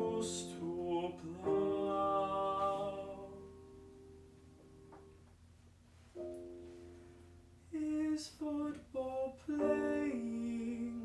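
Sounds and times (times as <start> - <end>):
man singing long note: 0.0 - 3.5
accompaniment chords ringing: 0.0 - 5.2, 6.2 - 8.1.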